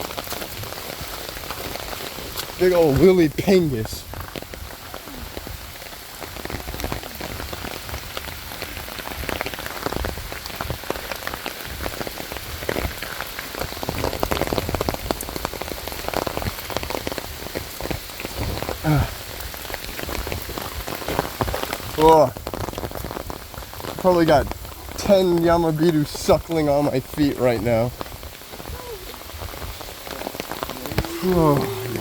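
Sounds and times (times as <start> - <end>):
rain patter: 0.0 - 32.0
person vocal sound: 18.8 - 19.2, 30.1 - 32.0.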